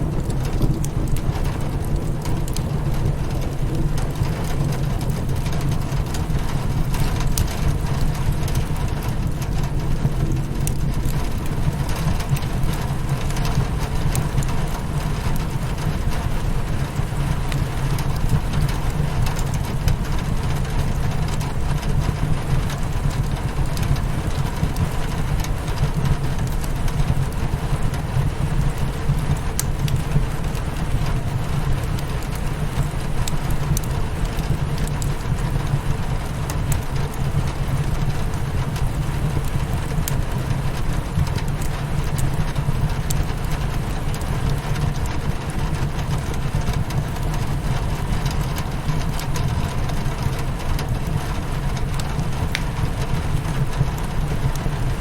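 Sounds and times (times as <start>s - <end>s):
low rumble: 0.0s - 14.5s
rain on window glass: 0.0s - 55.0s
wood fire crackling: 0.0s - 55.0s.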